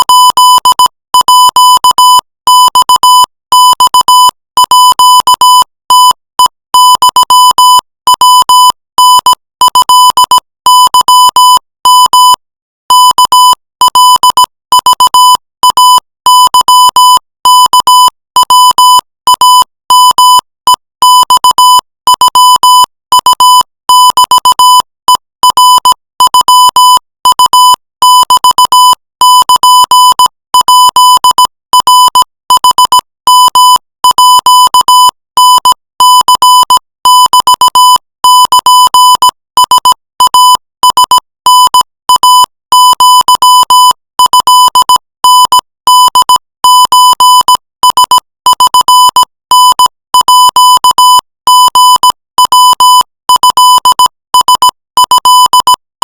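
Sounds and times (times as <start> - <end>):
morse code beeps: 0.1 - 2.0.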